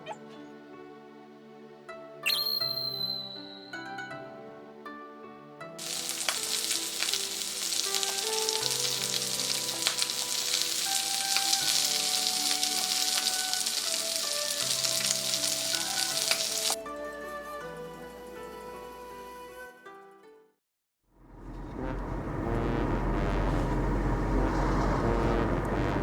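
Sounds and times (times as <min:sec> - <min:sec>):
soft background music: 0:00.0 - 0:20.6
campfire crackling and hissing: 0:05.8 - 0:16.8.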